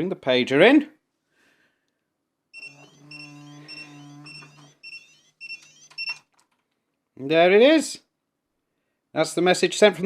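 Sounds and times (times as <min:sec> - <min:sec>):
steady low buzz: 0:02.6 - 0:05.3
pager short high beeps: 0:02.6 - 0:06.3.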